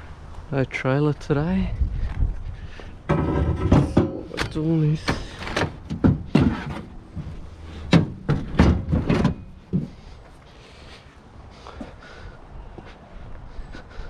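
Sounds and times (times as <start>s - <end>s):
scrap items knocking and clunking: 3.0s - 10.1s.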